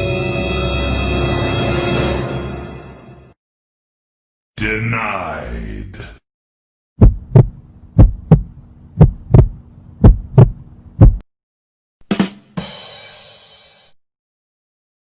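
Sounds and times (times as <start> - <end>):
heartbeat thumps: 7.0 - 11.2
low steady hum: 7.0 - 11.2.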